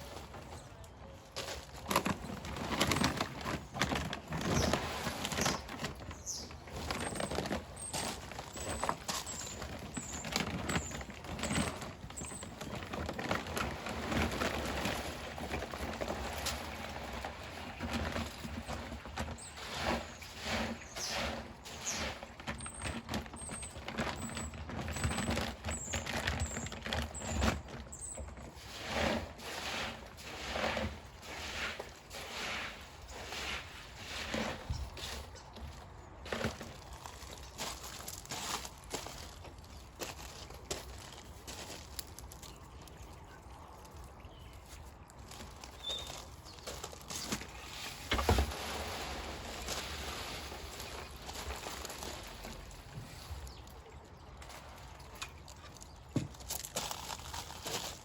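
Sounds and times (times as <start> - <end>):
plastic filter media rattling: 1.5 - 19.5, 22.3 - 28.5.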